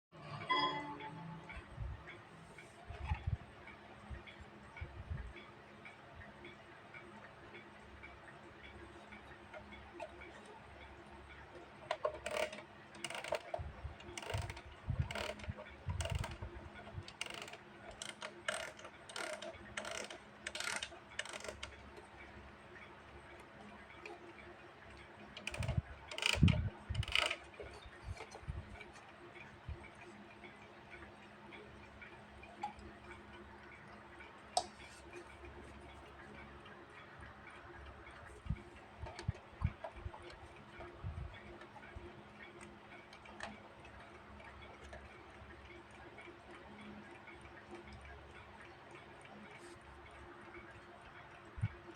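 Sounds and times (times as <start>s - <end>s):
clock ticking: 3.6s - 28.3s
alarm clock winding clicks: 11.9s - 16.4s, 17.1s - 21.8s, 25.4s - 27.5s.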